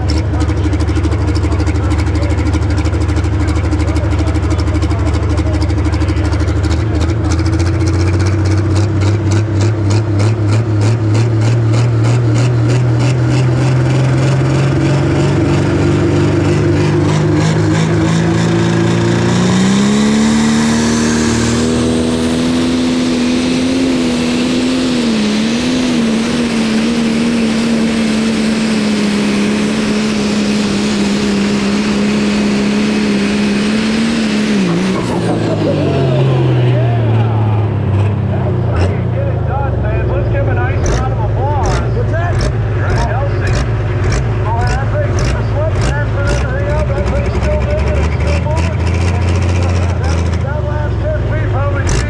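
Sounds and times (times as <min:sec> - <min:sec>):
diesel tractor engine under load: 0:00.0 - 0:52.0.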